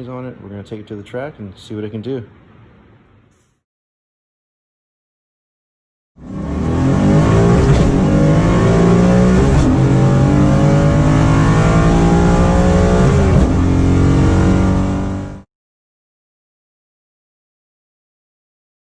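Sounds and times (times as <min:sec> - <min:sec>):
car engine accelerating through gears: 0:06.2 - 0:15.4.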